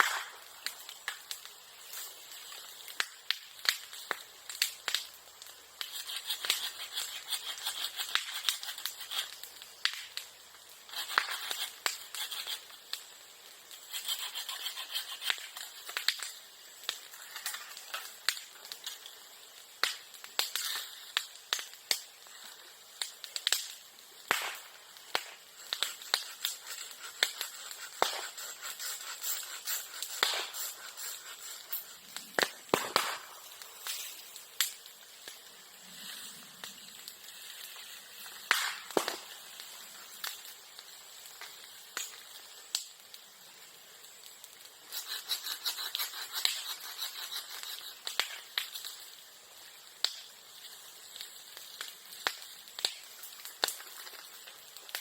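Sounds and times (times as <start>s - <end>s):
bamboo fire crackling: 0.0s - 55.0s
fire hiss: 0.0s - 55.0s
bamboo sharp pops: 32.2s - 34.0s.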